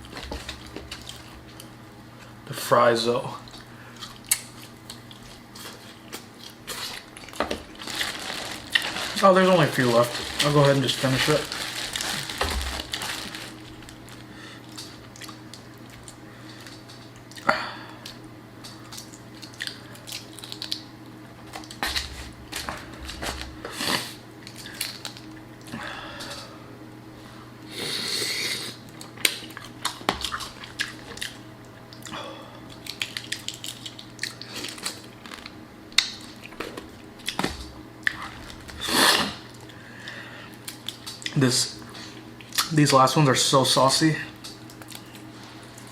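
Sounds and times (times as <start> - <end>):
chewing and lip smacks: 3.4 - 7.4, 14.7 - 20.9, 28.9 - 38.3, 42.4 - 42.7, 44.4 - 45.9.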